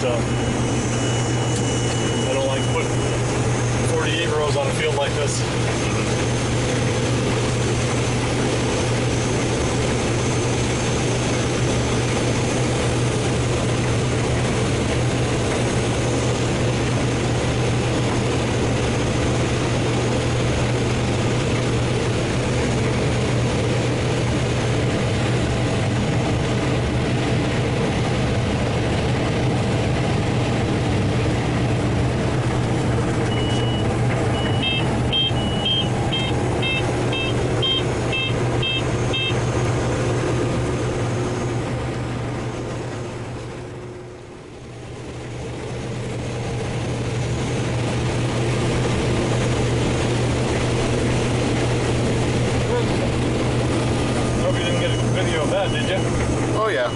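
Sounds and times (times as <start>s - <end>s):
combine harvester drone: 0.0s - 56.9s
rapid warning beeps: 0.1s - 3.2s, 33.3s - 39.4s, 54.4s - 56.9s.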